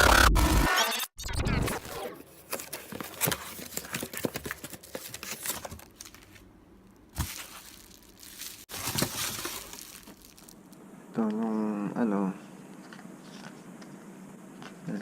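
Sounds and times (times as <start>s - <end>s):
plastic crinkling and rustling: 2.3s - 10.8s.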